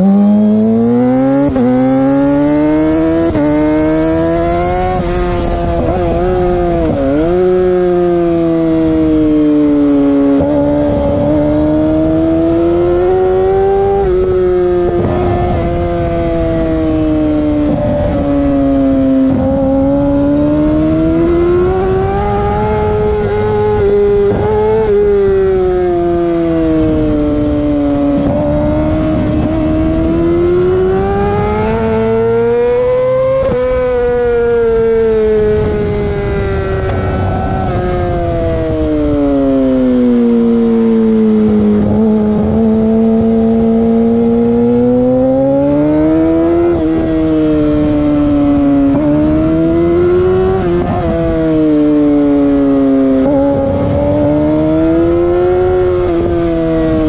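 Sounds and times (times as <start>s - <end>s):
engine revving: 0.0s - 57.0s.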